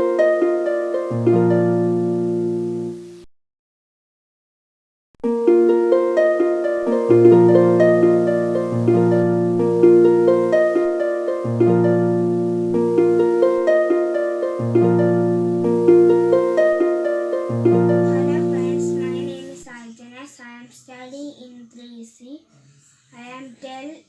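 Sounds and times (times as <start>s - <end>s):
plucked instrumental music: 0.0s - 3.0s, 5.2s - 19.8s.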